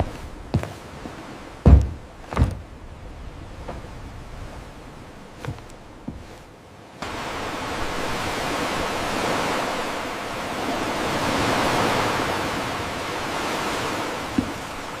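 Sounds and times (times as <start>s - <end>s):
sea surf rushing: 0.0s - 15.0s
short thump: 1.6s - 2.7s.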